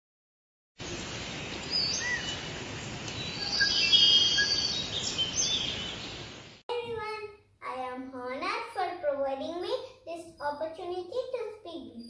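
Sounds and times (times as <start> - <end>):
birds chirping and singing: 1.5 - 2.5, 3.1 - 6.6.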